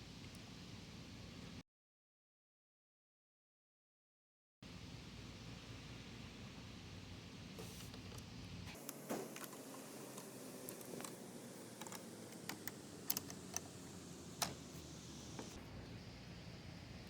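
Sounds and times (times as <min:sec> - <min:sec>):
faint clicks and taps: 0:07.9 - 0:13.8.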